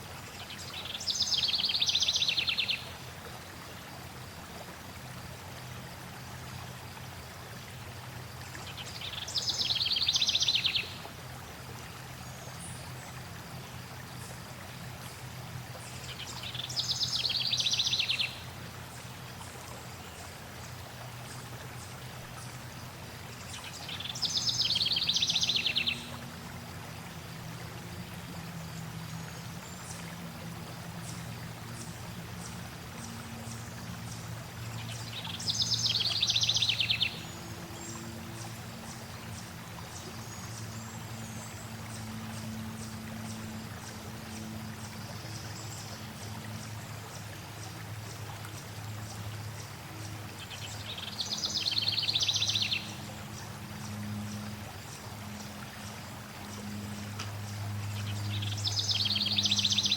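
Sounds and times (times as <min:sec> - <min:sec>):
stream water flowing: 0:00.0 - 0:59.9.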